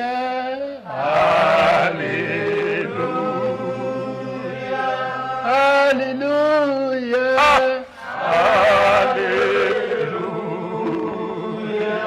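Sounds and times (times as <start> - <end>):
slow worship singing: 0.0 - 12.0.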